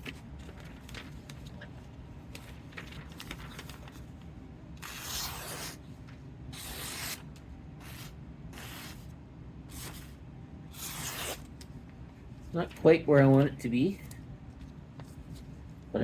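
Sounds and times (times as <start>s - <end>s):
knife cutting strokes: 10.8s - 11.4s.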